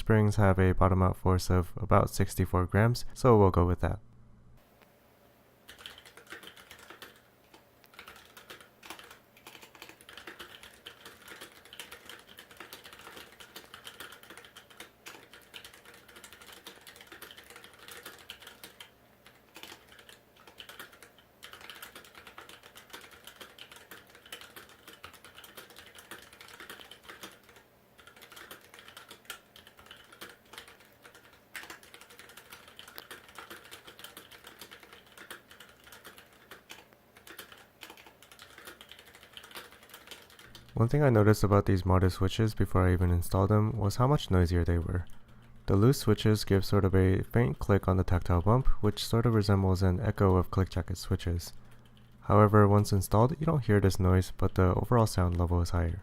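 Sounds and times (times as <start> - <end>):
mechanical keyboard keystroke clacks: 5.7 - 40.8.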